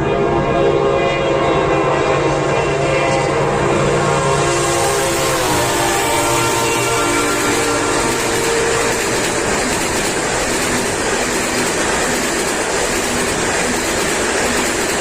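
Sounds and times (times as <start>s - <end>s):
train horn blast: 0.0s - 10.4s
passenger train passing: 0.0s - 15.0s.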